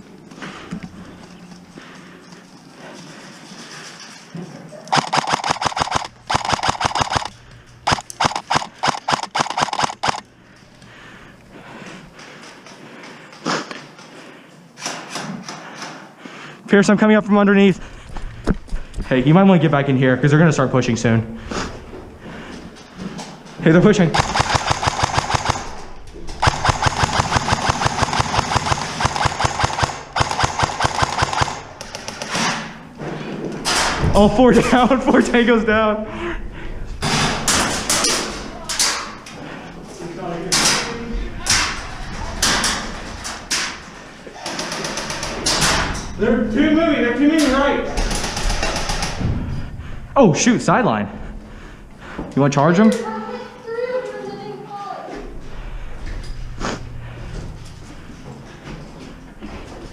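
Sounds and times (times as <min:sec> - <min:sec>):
airsoft rifle full-auto bursts: 0:04.9 - 0:10.3, 0:24.1 - 0:25.8, 0:26.4 - 0:32.3.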